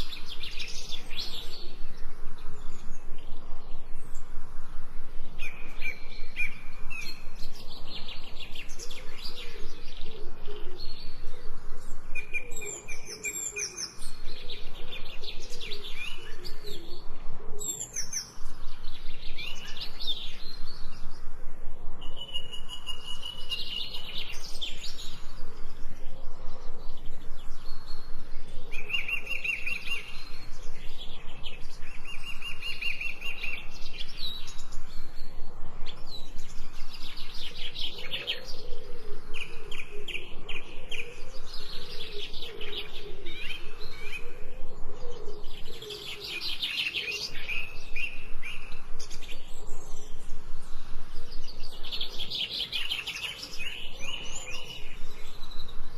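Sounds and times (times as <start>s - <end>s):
songbirds chirping and singing: 0.0s - 55.9s
lower warbling bird call: 22.0s - 50.7s.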